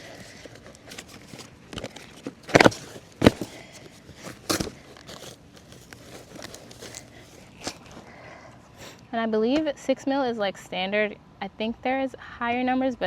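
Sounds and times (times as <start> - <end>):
plastic sheeting crinkling: 0.0 - 8.0
loud sharp plastic crackles: 0.0 - 8.1.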